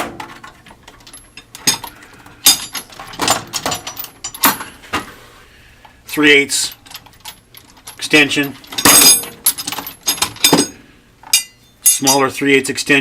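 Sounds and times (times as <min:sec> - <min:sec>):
metal tools clinking: 0:00.4 - 0:04.8, 0:06.5 - 0:12.4.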